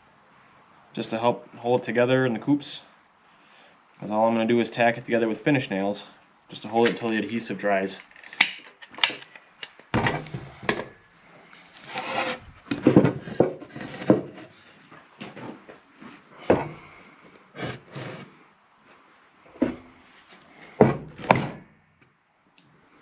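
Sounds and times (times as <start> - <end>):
wood scraping and rubbing: 10.0 - 16.9, 17.5 - 18.4.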